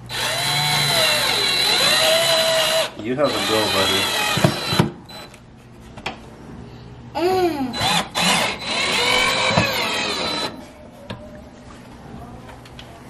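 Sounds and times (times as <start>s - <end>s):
power drill bursts: 0.1s - 5.3s, 7.8s - 10.6s.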